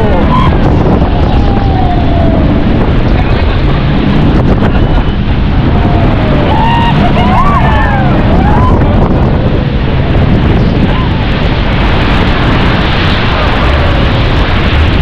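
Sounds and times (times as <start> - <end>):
passengers whooping and shouting: 0.0 - 2.9, 4.6 - 9.7
rushing water: 0.0 - 15.0
speedboat engine roar: 0.0 - 15.0
wind on microphone: 0.0 - 15.0.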